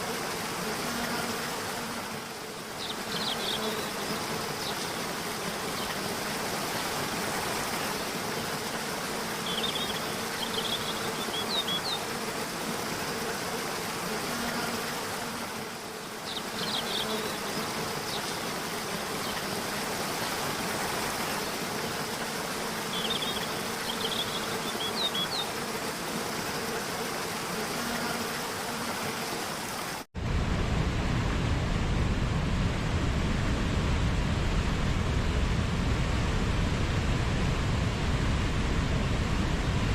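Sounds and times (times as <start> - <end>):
insects buzzing: 0.0 - 30.1
waterfall and stream rushing: 0.0 - 30.1.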